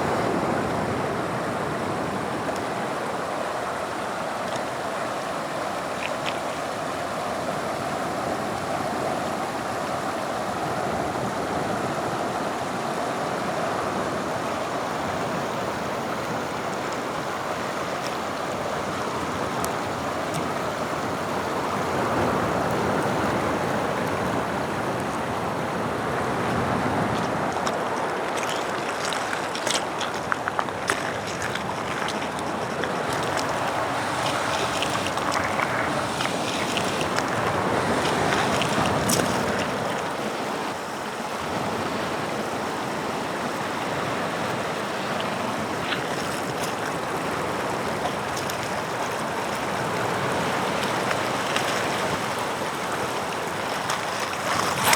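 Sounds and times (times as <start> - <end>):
running water: 0.0 - 54.9
sea waves washing on shore: 0.0 - 54.9.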